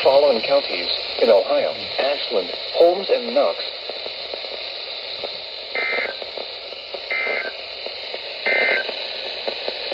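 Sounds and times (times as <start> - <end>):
radio hiss: 0.0 - 9.9
two-tone digital bursts: 5.8 - 6.2, 7.1 - 7.6, 8.4 - 9.0.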